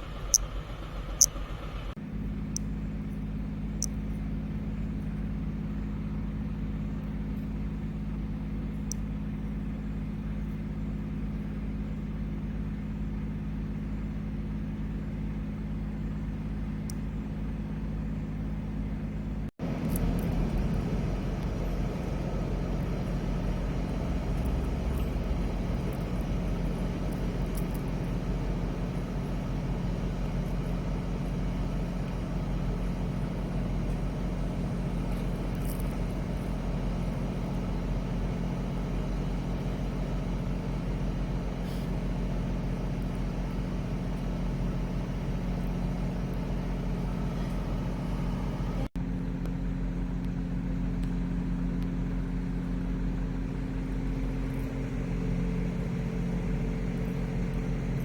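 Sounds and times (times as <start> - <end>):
truck and car engines idling: 0.0 - 58.0.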